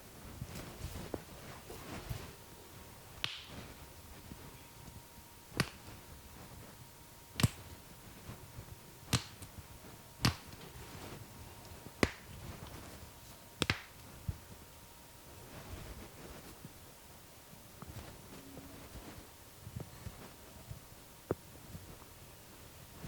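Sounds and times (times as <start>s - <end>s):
sharp cracks of massaging hands: 3.2s - 3.7s, 5.5s - 6.0s, 7.4s - 7.7s, 9.1s - 9.6s, 10.2s - 10.7s, 12.0s - 12.8s, 13.6s - 14.0s.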